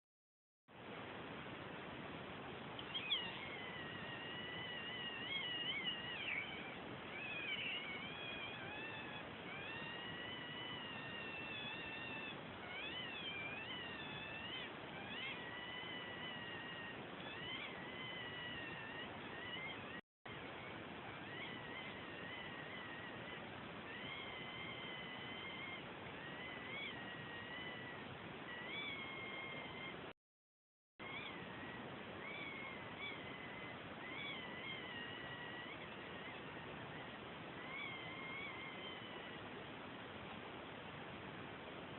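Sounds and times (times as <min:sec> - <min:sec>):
background hiss: 0:00.7 - 0:30.1
cat squeaking calls: 0:02.8 - 0:30.1, 0:31.0 - 0:39.5
pet whining cry: 0:02.8 - 0:30.1, 0:31.0 - 0:39.7.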